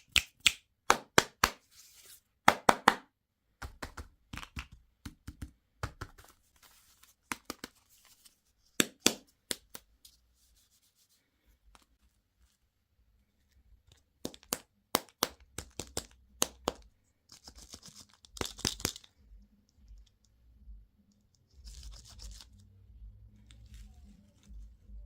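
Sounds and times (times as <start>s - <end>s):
plastic packaging clicks and snaps: 18.2s - 19.1s.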